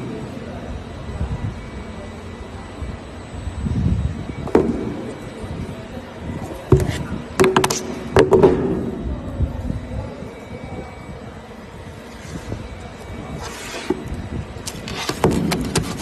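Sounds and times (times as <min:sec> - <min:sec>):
hard objects knocking and clattering: 0:06.7 - 0:08.6, 0:14.8 - 0:16.0.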